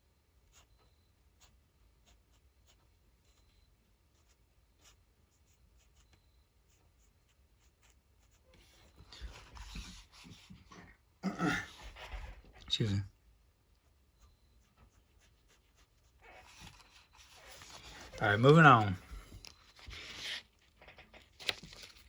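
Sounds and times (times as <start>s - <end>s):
pen scratching on paper: 0.4s - 10.6s, 13.8s - 19.0s
rubbing and handling sounds: 1.4s - 11.0s, 13.8s - 22.0s.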